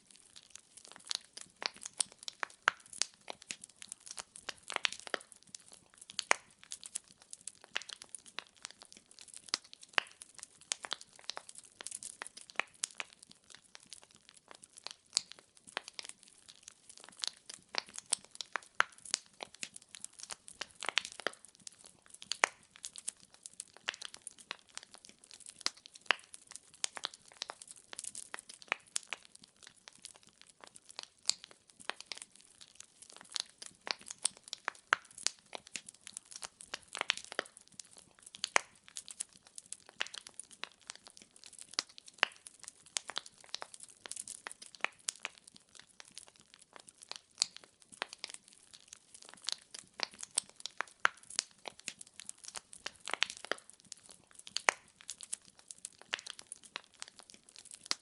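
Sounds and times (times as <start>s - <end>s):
wood fire crackling and popping: 0.0s - 58.0s.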